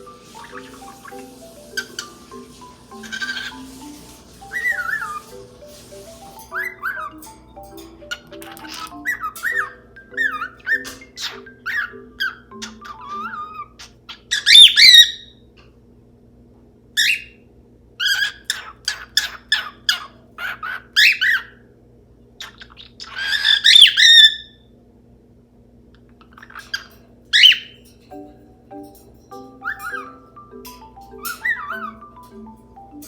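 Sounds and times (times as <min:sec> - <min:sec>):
cockatiel chirping and squawking: 0:00.0 - 0:07.2, 0:08.1 - 0:15.3, 0:18.0 - 0:21.6, 0:22.4 - 0:24.6, 0:26.3 - 0:27.8, 0:29.6 - 0:30.3, 0:31.2 - 0:32.4
quiet background music: 0:00.0 - 0:15.6, 0:26.3 - 0:33.0.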